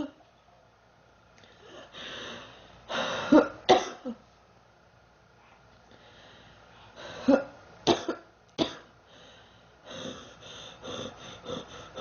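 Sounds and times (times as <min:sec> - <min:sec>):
girl coughing: 0:03.3 - 0:04.2, 0:07.2 - 0:08.9.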